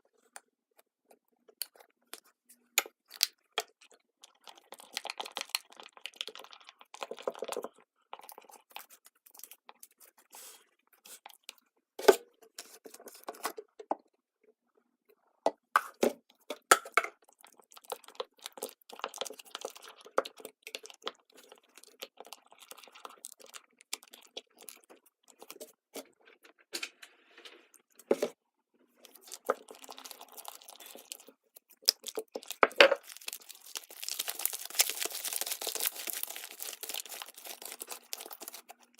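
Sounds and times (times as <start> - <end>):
slime squelching and clicking: 29.0 - 38.9.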